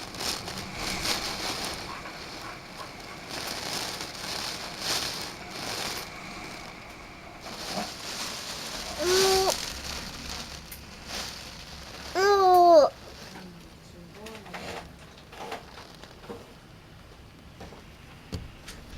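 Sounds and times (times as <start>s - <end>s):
heavy rain: 0.0s - 13.2s
crackles: 0.0s - 18.1s
child vocal sound: 8.9s - 9.6s, 12.1s - 13.0s.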